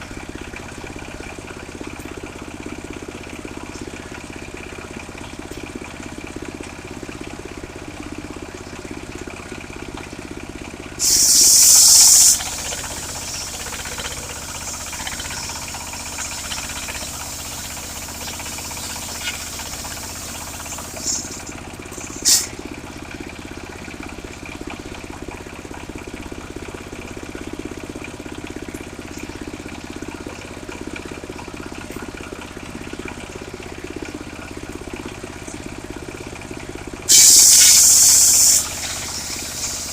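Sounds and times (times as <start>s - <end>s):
sawmill engine running: 0.0s - 39.9s
loud hissing bursts: 11.0s - 22.6s, 37.1s - 39.9s.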